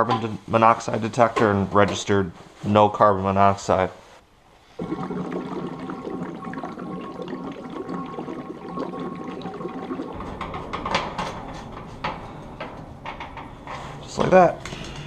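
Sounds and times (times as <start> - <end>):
kerosene pouring into tank: 4.8 - 11.8.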